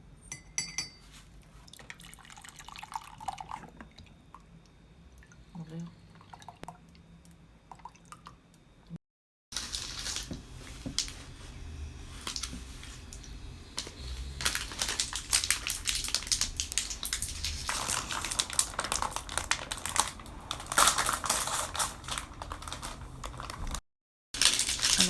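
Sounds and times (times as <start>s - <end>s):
small hard objects clattering: 24.4s - 25.0s.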